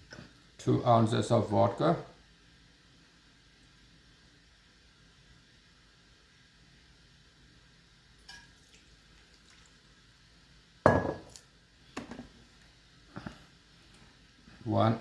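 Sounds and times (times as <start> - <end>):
glassware clinking: 10.9 - 11.4.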